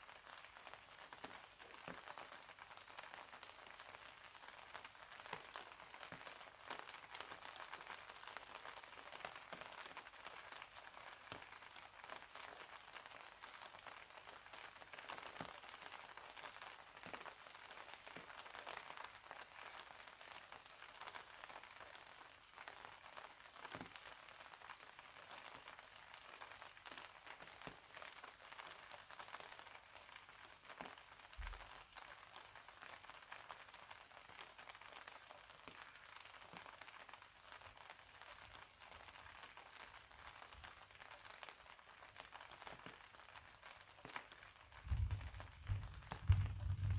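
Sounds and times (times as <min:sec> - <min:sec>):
faint rain hissing: 0:00.1 - 0:46.9
low thump: 0:44.9 - 0:46.9.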